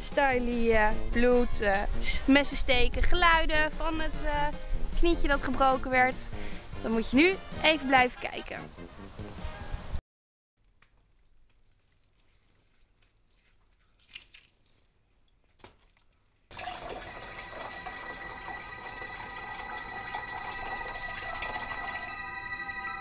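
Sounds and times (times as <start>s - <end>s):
faint drip-like sounds: 10.8s - 22.1s
music of sustained chime tones: 16.6s - 23.0s.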